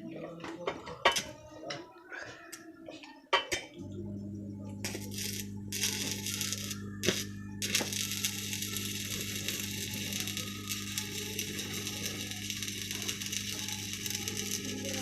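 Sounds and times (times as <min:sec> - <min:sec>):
welding machine hum: 0:03.8 - 0:15.0
welding arc crackle: 0:04.8 - 0:15.0.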